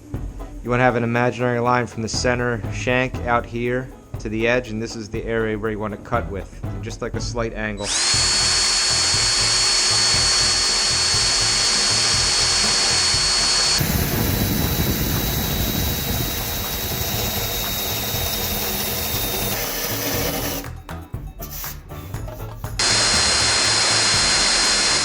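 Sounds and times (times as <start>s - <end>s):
power drill sanding disc whining: 7.8s - 25.0s.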